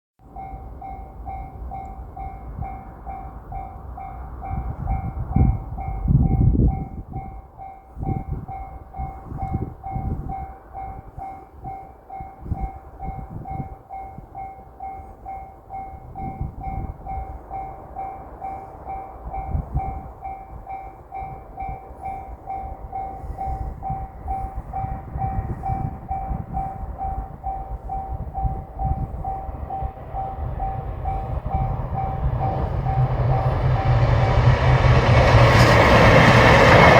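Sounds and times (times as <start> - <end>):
level-crossing warning bell: 0.2 - 36.9
low rumbling: 23.0 - 36.9.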